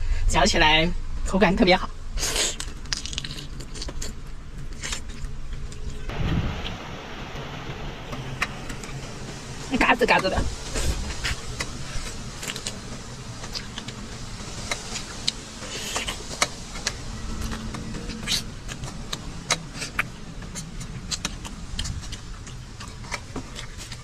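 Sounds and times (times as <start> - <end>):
steady low hum: 0.0 - 24.0
chewing: 2.2 - 6.1, 10.7 - 12.8, 13.4 - 14.0, 14.6 - 24.0.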